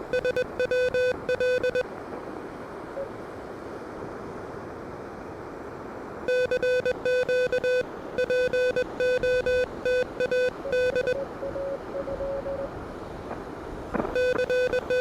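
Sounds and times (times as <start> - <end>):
morse code tone: 0.0 - 1.8, 6.3 - 12.7, 14.1 - 15.0.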